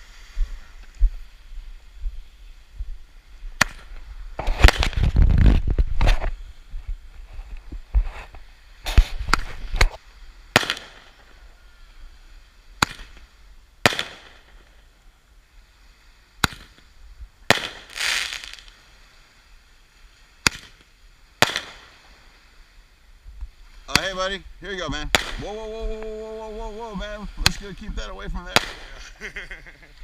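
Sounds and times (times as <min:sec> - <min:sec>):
firework hiss: 0:00.0 - 0:30.0
roman candle shots popping: 0:03.6 - 0:06.2, 0:08.9 - 0:11.3, 0:20.4 - 0:22.1, 0:25.0 - 0:29.2.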